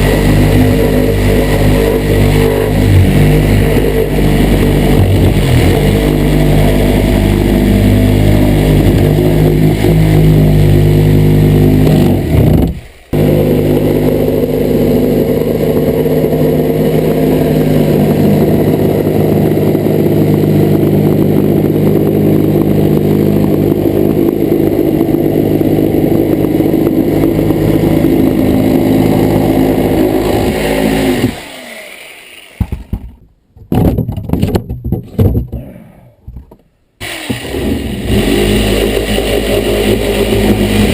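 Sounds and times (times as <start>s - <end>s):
reciprocating saw cutting: 0.0s - 33.0s, 37.0s - 40.9s
scattered knocks: 32.6s - 35.6s.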